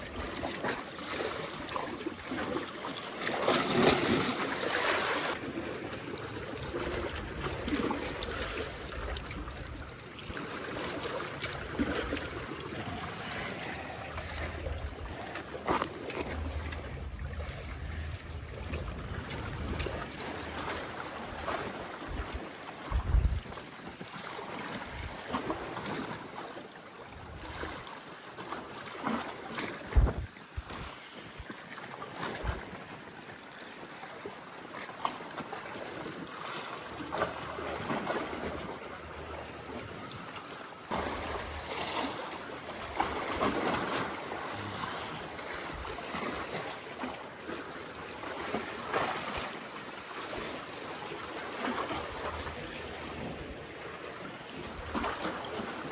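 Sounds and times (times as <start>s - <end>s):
seawater sloshing among concrete blocks: 0.0s - 55.9s
wind buffeting microphone: 5.7s - 23.6s, 29.8s - 31.0s.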